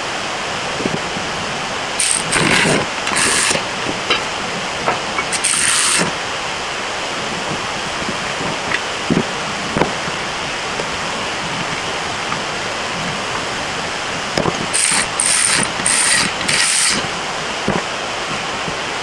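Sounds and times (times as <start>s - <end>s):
ratchet wrench clicking: 2.0s - 6.2s, 14.6s - 17.2s
tools knocking on metal: 2.0s - 6.2s.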